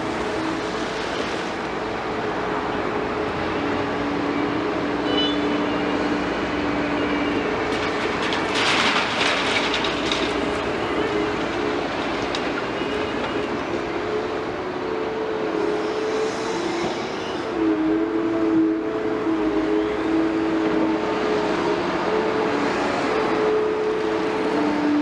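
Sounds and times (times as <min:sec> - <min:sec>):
excavator diesel engine and hydraulics: 0:00.0 - 0:25.0
rattling and clatter: 0:07.7 - 0:10.6.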